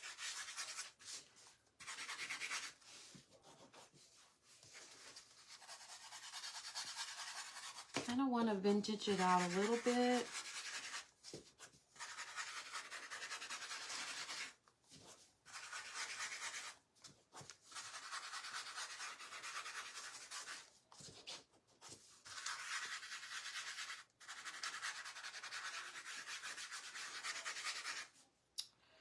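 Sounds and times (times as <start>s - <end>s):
ink applicator rubbing on surface: 8.9s - 11.0s.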